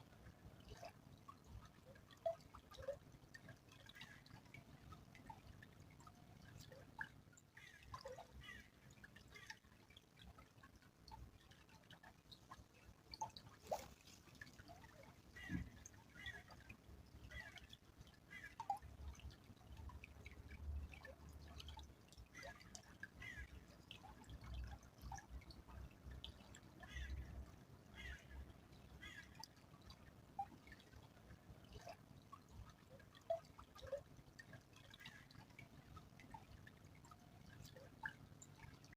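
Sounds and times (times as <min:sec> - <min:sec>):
stream trickling: 0:00.0 - 0:38.9
water dripping and plinking: 0:00.0 - 0:38.9.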